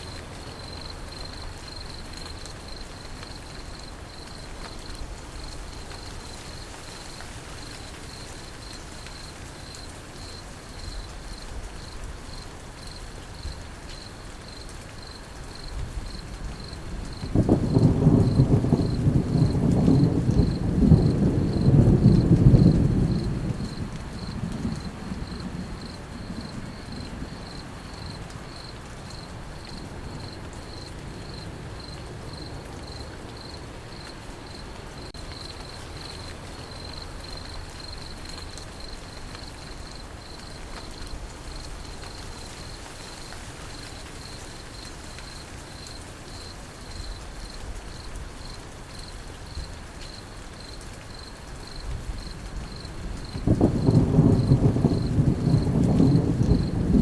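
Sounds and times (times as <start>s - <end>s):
crickets chirping: 0.0s - 57.0s
light rain: 0.0s - 57.0s
thunder rumble: 15.8s - 28.7s, 51.9s - 57.0s.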